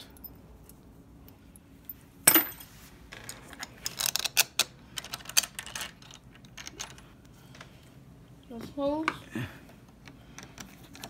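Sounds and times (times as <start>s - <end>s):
metal lock parts clinking: 2.3s - 7.0s.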